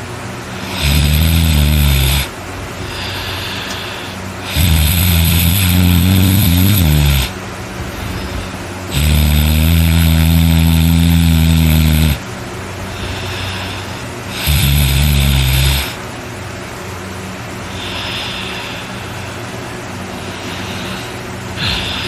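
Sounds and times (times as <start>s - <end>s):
man snoring loudly: 0.6s - 2.3s, 2.9s - 7.4s, 8.2s - 12.2s, 12.9s - 16.0s, 20.2s - 22.0s.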